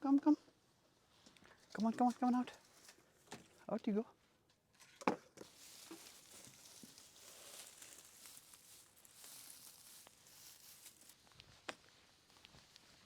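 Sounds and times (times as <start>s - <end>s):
faint rustling: 5.4s - 13.0s.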